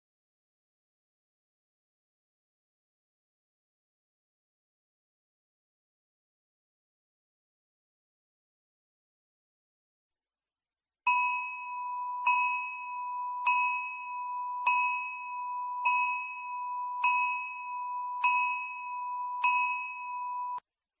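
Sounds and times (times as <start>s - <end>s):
bell-like electronic timer chime: 11.1s - 20.6s.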